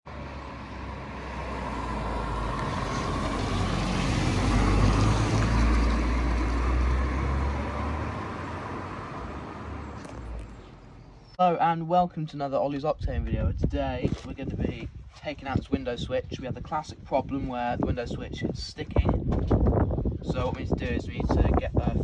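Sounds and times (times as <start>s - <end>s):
car passing by: 0.1s - 11.0s.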